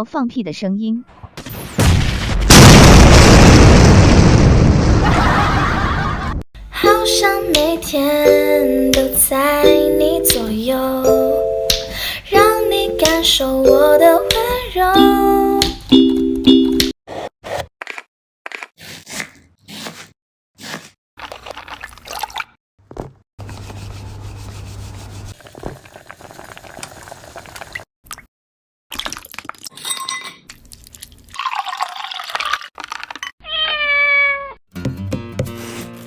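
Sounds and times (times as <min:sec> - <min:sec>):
cat meowing: 0:33.4 - 0:34.6.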